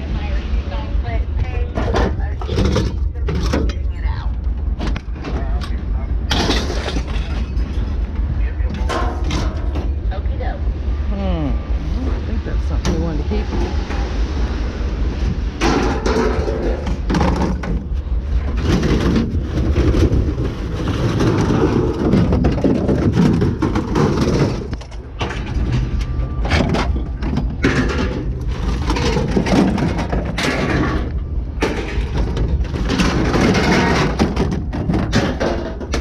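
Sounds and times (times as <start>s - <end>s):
low rumble: 0.0s - 36.0s
scrap metal clattering: 6.3s - 8.0s, 15.6s - 36.0s.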